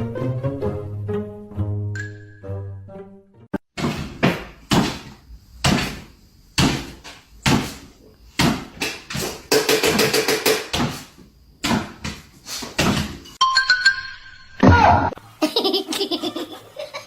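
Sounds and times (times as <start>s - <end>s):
loud knocks: 3.8s - 7.8s, 8.4s - 11.0s.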